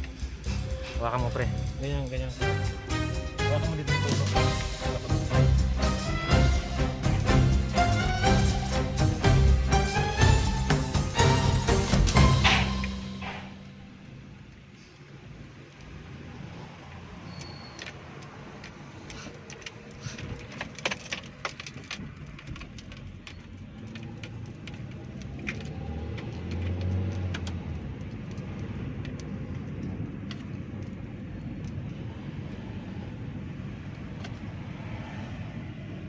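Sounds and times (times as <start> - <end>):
light clicks and rattles: 17.8 - 31.9
car low running rumble: 18.4 - 36.0.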